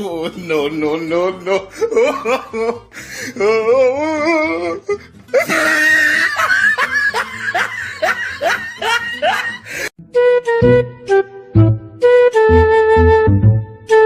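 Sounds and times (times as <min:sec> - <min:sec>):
loud burst of laughter: 0:05.3 - 0:09.9.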